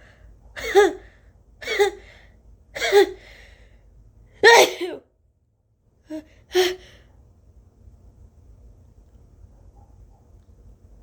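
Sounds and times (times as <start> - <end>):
woman sneezing: 0.6 - 1.0, 4.4 - 5.1.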